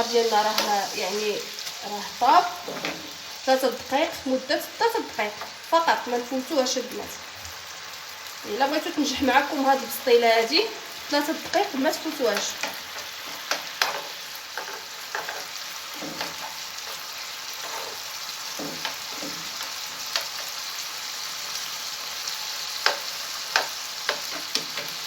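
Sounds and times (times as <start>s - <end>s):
squid sizzling in a frying pan: 0.0s - 25.0s
stirring in a pan: 10.8s - 25.0s.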